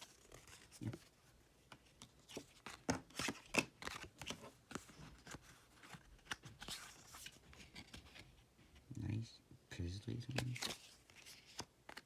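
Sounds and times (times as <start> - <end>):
trading cards clicking and rustling: 1.7 - 8.2, 10.3 - 12.0.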